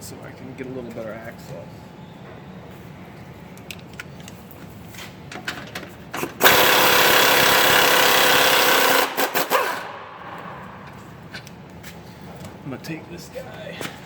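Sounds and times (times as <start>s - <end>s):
handheld power tool running: 6.4s - 10.0s.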